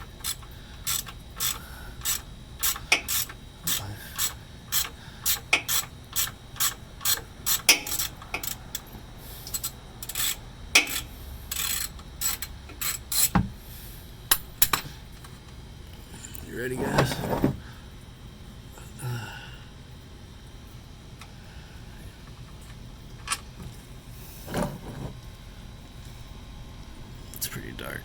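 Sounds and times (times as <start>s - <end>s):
socket ratchet clicking: 0.0s - 13.4s.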